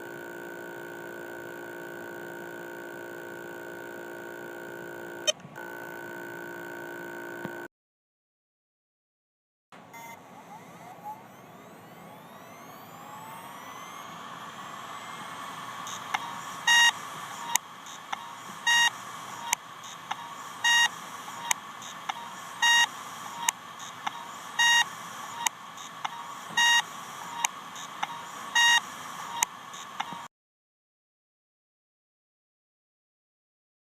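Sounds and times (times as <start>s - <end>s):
hard drive clicking: 0.0s - 7.7s, 13.6s - 30.3s
hard drive spinning whine: 0.0s - 7.7s, 9.8s - 30.3s
short beep-like buzz: 15.8s - 30.3s.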